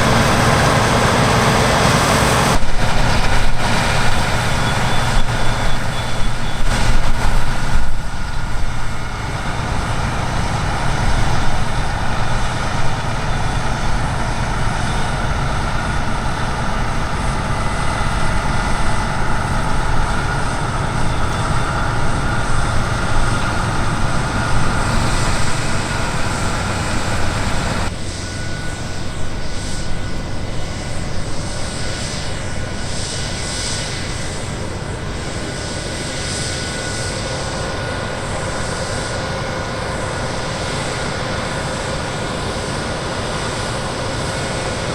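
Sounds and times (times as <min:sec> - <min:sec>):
harvest machinery engine drone: 0:00.0 - 0:44.9
high machine whine: 0:00.0 - 0:44.9.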